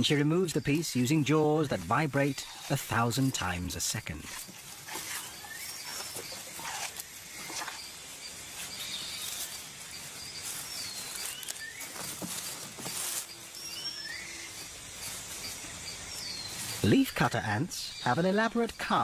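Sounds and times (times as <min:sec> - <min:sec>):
ant cutting a leaf: 0:04.2 - 0:07.8.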